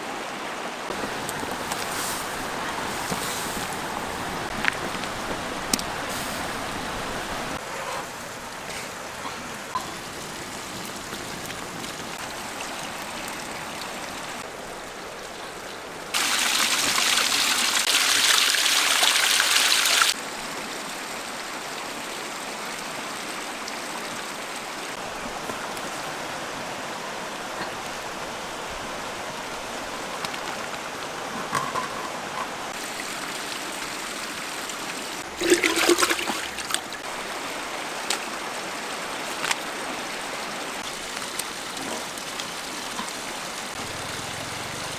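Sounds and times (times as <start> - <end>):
hissing water rush: 0.0 - 31.4, 32.6 - 44.9
water running and trickling: 0.9 - 7.6, 8.2 - 20.2, 32.7 - 44.9.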